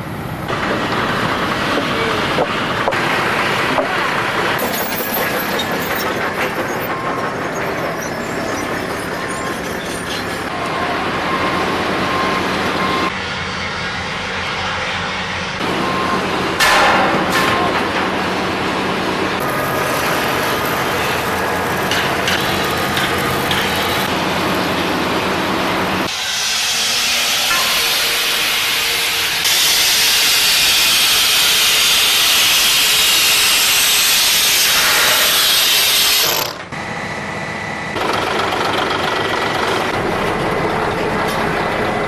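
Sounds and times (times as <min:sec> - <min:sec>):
heavy machinery engine hum: 0:00.0 - 0:26.1, 0:36.6 - 0:42.0
loud mechanical burst: 0:19.4 - 0:24.5.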